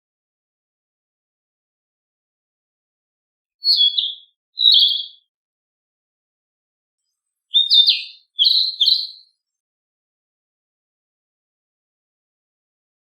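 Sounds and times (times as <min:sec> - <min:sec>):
bird singing warbled phrases: 0:03.6 - 0:05.3, 0:07.1 - 0:09.6.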